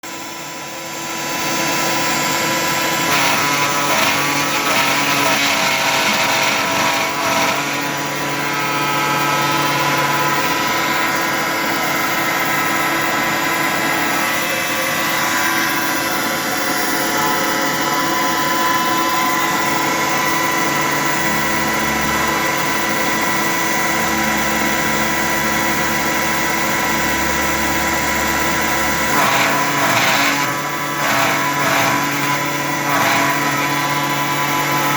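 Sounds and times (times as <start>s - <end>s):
router motor whine: 0.0s - 34.9s
rough scratchy cutting: 3.0s - 12.7s, 29.0s - 34.9s.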